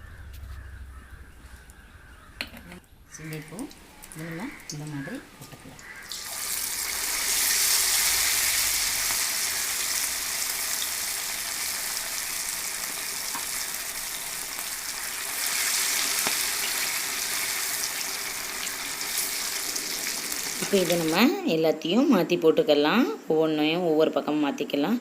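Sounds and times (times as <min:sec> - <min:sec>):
chicken deep-frying in hot oil: 0:03.2 - 0:21.2.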